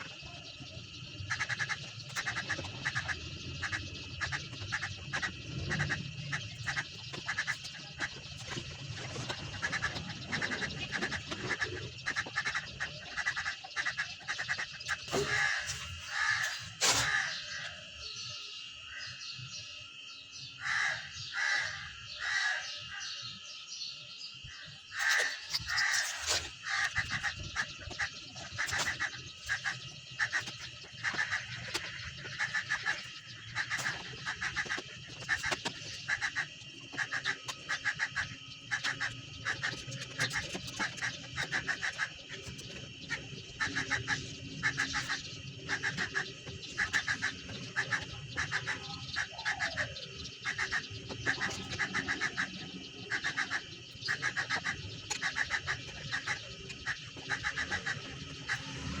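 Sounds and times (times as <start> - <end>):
birds calling: 0.0 - 59.0.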